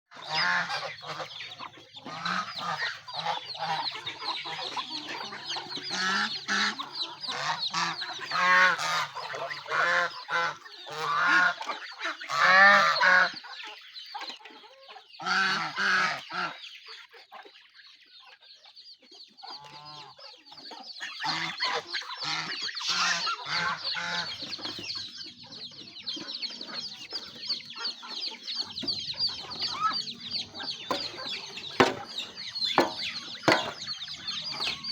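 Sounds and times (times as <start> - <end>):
geese honking: 0.1 - 13.8, 15.2 - 16.6, 21.0 - 24.8, 26.7 - 34.9
chickens clucking: 0.1 - 34.9
high chirping: 28.6 - 34.9.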